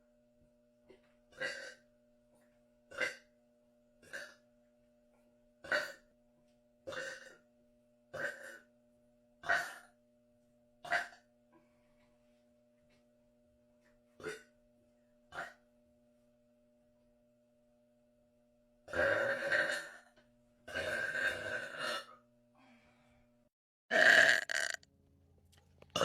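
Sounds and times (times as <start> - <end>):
person burping: 1.4 - 1.8, 2.9 - 3.3, 4.0 - 4.4, 5.6 - 6.0, 6.9 - 7.4, 8.2 - 8.7, 18.9 - 20.1, 20.7 - 22.2, 23.9 - 24.8.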